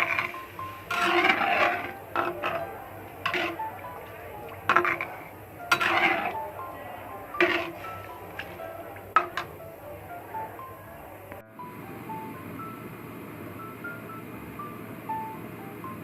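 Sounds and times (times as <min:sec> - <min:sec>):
utensil scraping a pot: 0:00.0 - 0:09.7
food simmering: 0:00.0 - 0:11.4
faint background music: 0:00.0 - 0:16.0.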